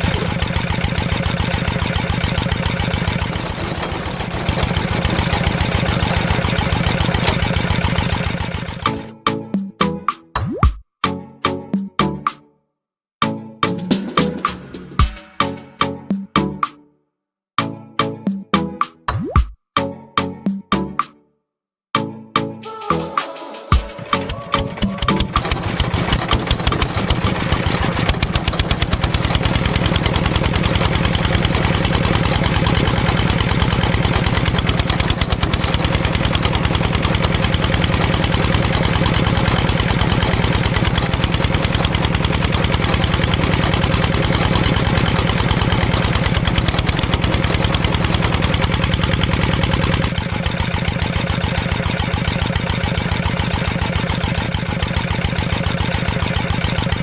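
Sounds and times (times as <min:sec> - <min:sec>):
small engine running: 0:00.0 - 0:09.1, 0:22.7 - 0:57.0.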